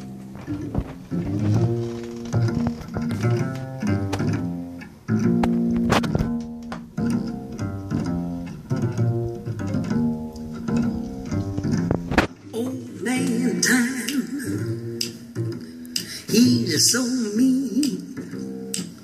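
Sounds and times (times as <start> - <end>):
plucked bass: 0.0 - 19.0
vocals: 12.3 - 19.0.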